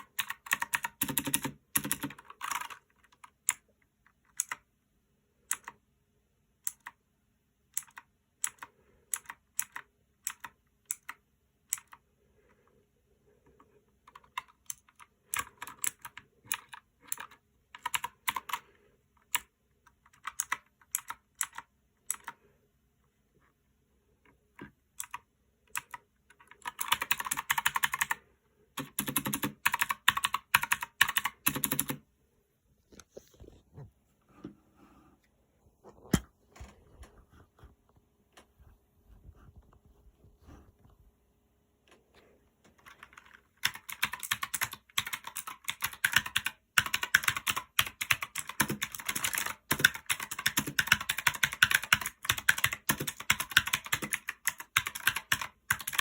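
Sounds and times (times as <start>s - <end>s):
clicky mechanical keyboard typing: 0.0s - 4.7s, 5.4s - 5.8s, 6.6s - 7.0s, 7.7s - 12.0s, 13.6s - 22.4s, 24.5s - 28.2s, 28.8s - 32.0s, 42.7s - 56.0s.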